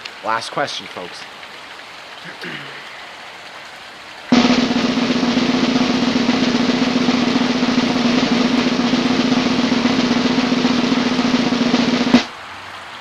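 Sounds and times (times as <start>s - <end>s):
snare drum roll: 4.3s - 12.3s.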